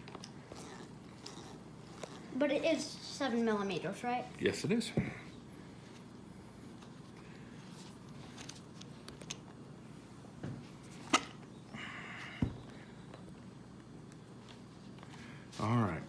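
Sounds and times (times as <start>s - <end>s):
dull knock: 12.4s - 12.6s.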